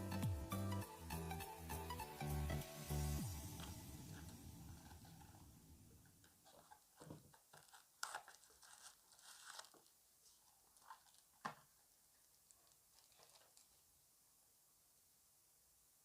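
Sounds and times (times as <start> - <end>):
packaging rustling and crinkling: 6.2 - 13.9.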